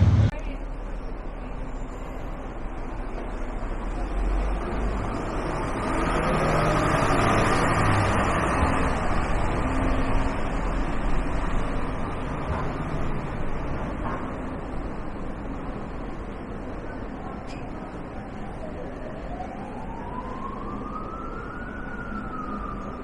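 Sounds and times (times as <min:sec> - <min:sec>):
vehicle passing: 0:00.0 - 0:00.3.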